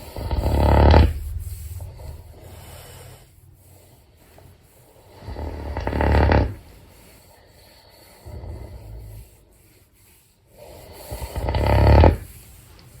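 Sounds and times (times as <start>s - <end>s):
pet snoring: 0.0s - 1.3s, 5.0s - 9.5s, 10.5s - 12.4s.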